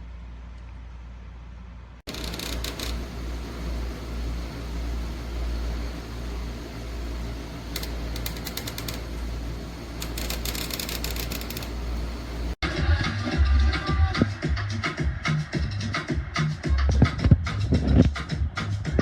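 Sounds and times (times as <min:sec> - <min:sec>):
low hum: 0:02.1 - 0:12.6
rapid clicking: 0:02.1 - 0:12.6.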